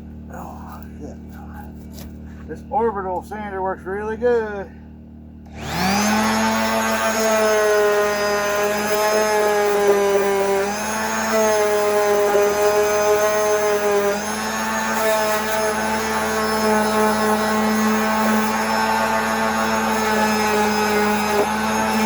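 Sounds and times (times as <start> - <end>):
orbital sander running: 5.4 - 22.0.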